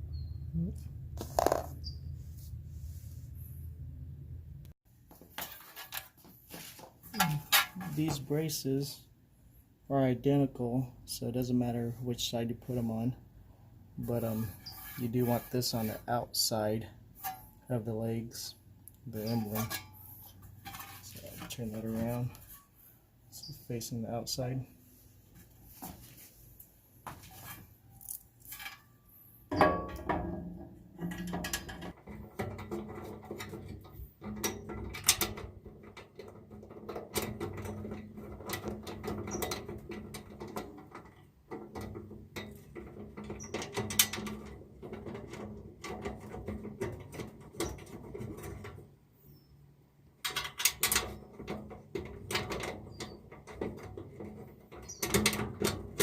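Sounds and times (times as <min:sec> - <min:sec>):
metal parts clanking and scraping: 0:05.3 - 0:09.0, 0:14.0 - 0:16.2, 0:19.1 - 0:22.8, 0:27.2 - 0:48.8.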